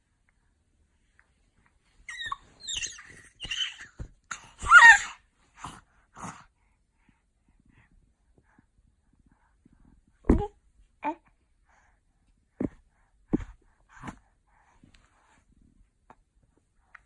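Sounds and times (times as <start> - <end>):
baby screeching: 2.1 - 5.2.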